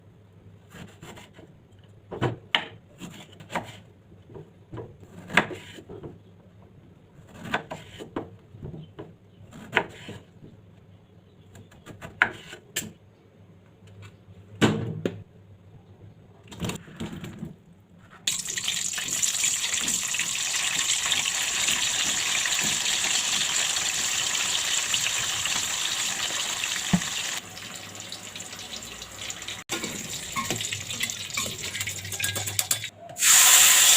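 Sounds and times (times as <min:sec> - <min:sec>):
tap water running into sink: 0:18.3 - 0:32.8
kitchen knocks and clatters: 0:29.6 - 0:32.9.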